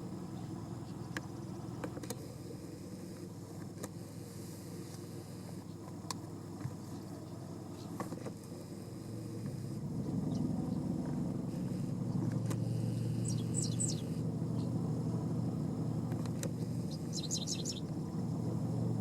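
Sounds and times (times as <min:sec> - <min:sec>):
vehicle engine idling: 0:00.0 - 0:19.0
high bird chirps: 0:13.1 - 0:14.8, 0:16.8 - 0:17.9.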